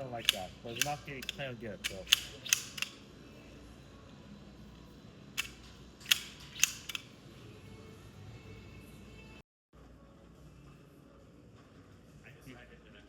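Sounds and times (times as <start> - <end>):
metallic firearm action clicks: 0.1 - 3.1, 5.4 - 7.2.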